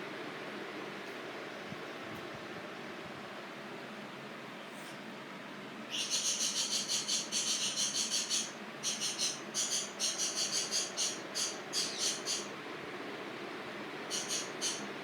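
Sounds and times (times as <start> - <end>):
rapid high-pitched chirping: 5.9 - 12.5, 14.1 - 14.9.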